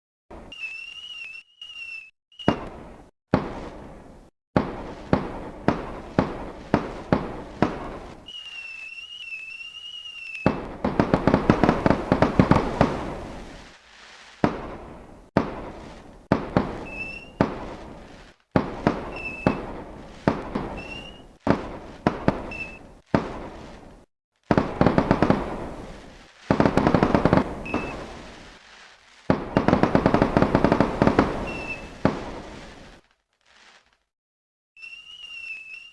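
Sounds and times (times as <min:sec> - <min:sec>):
fireworks bangs and crackling: 0:00.3 - 0:34.1, 0:34.8 - 0:35.9
high wavering whistle: 0:00.5 - 0:02.7, 0:08.2 - 0:10.5, 0:16.8 - 0:17.4, 0:19.1 - 0:19.6, 0:20.8 - 0:21.3, 0:22.5 - 0:22.9, 0:31.4 - 0:31.9, 0:34.8 - 0:35.9.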